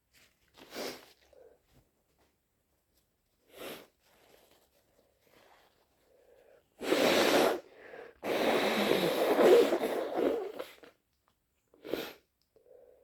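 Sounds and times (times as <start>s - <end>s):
person blowing nose: 0.6s - 1.1s, 3.5s - 3.9s, 6.8s - 10.9s, 11.8s - 12.2s.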